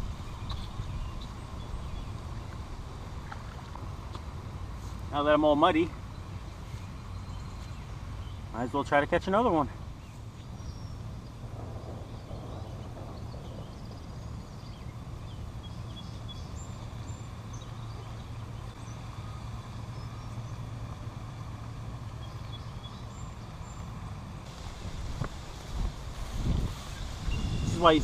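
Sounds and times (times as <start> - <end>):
low outdoor rumble: 0.0 - 28.0
bird chirps: 10.0 - 20.7, 26.9 - 28.0.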